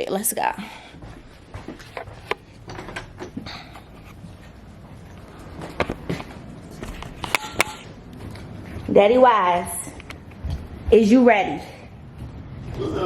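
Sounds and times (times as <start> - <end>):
footsteps: 0.7 - 12.9.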